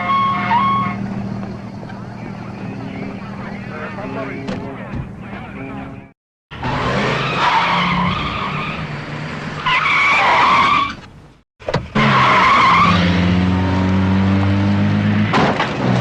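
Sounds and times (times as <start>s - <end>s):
car tyres squealing: 0.0s - 5.4s, 6.5s - 13.3s
car engine running: 0.8s - 6.6s.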